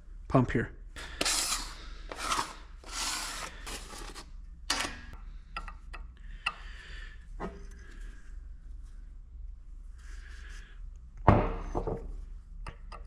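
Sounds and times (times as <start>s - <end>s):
rubbing scraping strokes: 1.1s - 4.2s.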